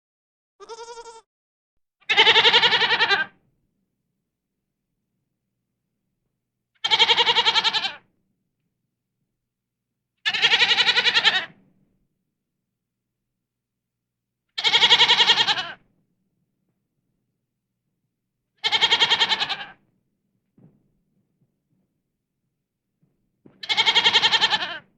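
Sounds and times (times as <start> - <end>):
goat bleating: 0.6 - 1.3, 2.1 - 3.3, 6.8 - 8.0, 10.3 - 11.5, 14.6 - 15.8, 18.6 - 19.8, 23.6 - 24.9.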